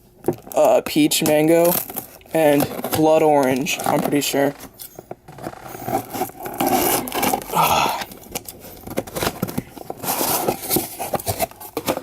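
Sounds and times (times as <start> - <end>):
package rustling and scraping: 0.0 - 12.0.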